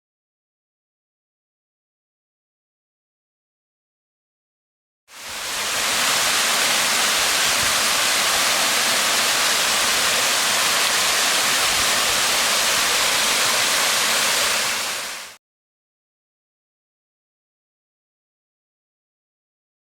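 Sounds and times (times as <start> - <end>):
waterfall rushing: 5.1 - 15.4.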